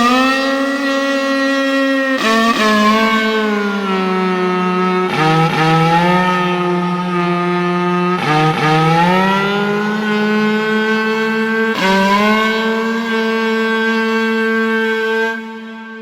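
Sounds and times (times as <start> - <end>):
cow horn long notes: 0.0 - 16.0.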